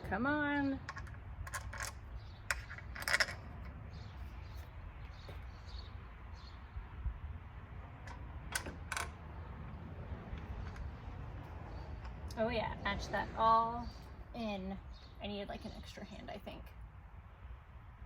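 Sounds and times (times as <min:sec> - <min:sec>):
bolts and nuts clinking on metal: 0:00.7 - 0:03.7, 0:08.0 - 0:09.2.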